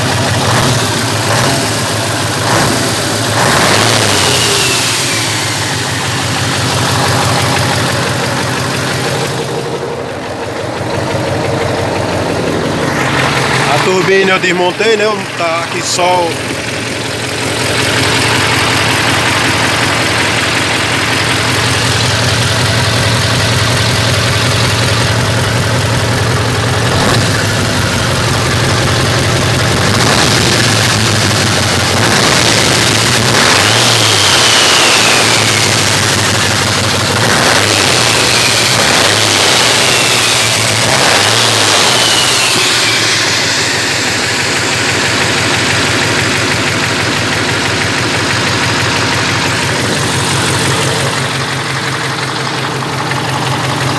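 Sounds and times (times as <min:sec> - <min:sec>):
diesel truck engine idling and revving: 0:00.0 - 0:53.9.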